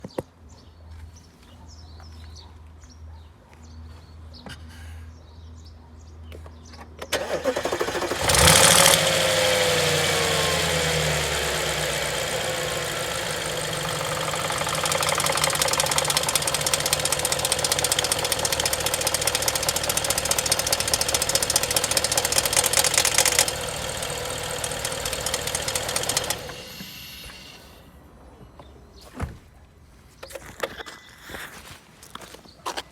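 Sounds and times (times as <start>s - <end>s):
car engine starting and clattering: 7.0s - 27.8s.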